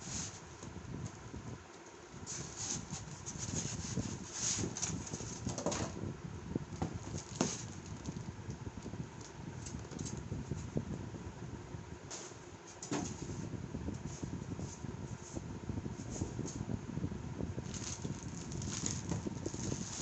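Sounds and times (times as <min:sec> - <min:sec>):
packaging rustling: 0:17.6 - 0:20.0.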